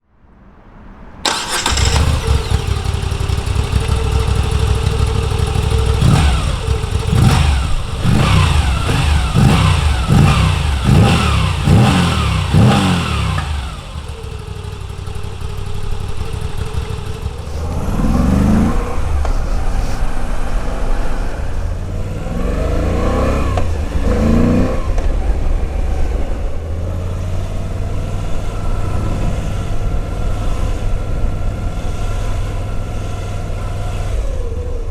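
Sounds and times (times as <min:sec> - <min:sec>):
motorcycle engine idling and revving: 0:01.2 - 0:20.2.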